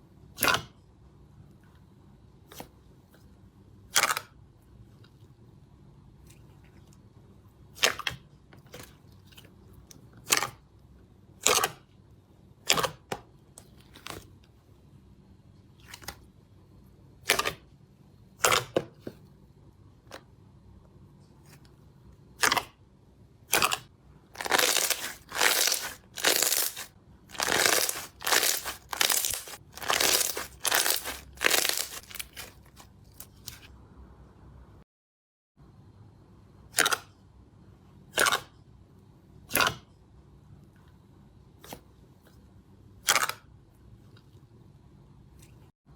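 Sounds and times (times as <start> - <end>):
sticky slime pops and crackles: 24.4 - 32.8.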